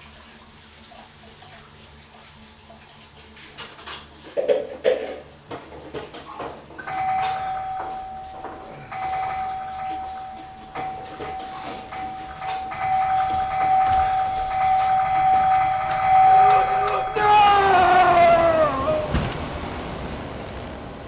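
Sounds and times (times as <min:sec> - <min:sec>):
bell-like ringing tone: 0:06.9 - 0:17.7.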